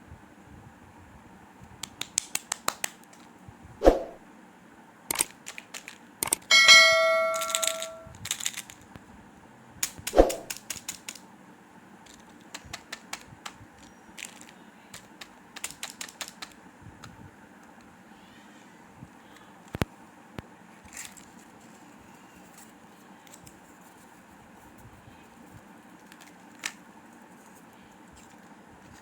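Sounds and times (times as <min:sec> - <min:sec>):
bell-like ding: 0:06.5 - 0:08.1.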